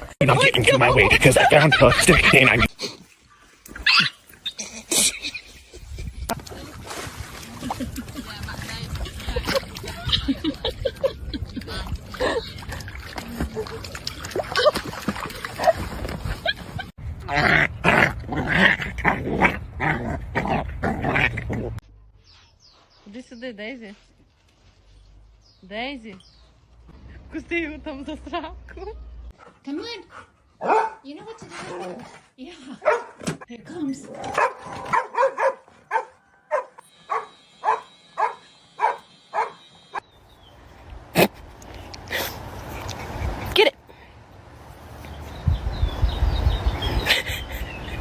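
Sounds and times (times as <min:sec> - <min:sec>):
dog growling and barking: 0:17.2 - 0:21.8
dog barking: 0:30.6 - 0:31.1, 0:32.8 - 0:33.2, 0:34.3 - 0:39.7.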